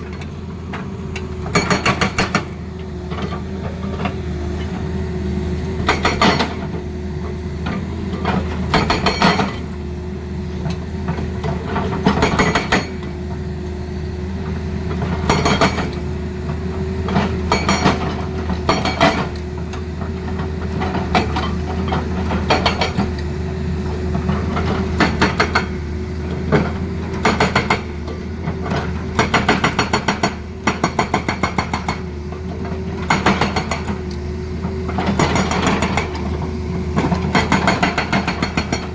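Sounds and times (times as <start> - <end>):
hydraulic breaker hammering: 5.8 - 6.6, 37.1 - 38.9.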